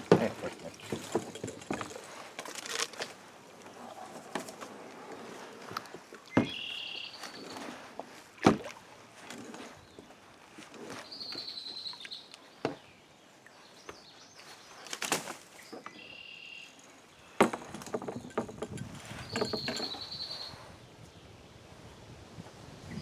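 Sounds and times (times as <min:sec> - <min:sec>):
songbird singing: 0:00.0 - 0:02.4, 0:03.1 - 0:08.2, 0:09.4 - 0:21.6
kayak and paddle knocking: 0:00.0 - 0:11.8, 0:12.4 - 0:13.0, 0:17.3 - 0:20.4.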